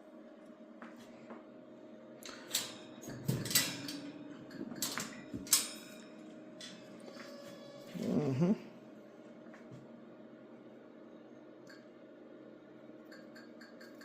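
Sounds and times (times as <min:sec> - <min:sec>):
steady low hum: 0:00.0 - 0:14.0
sharp clicks and clinks: 0:13.0 - 0:14.0.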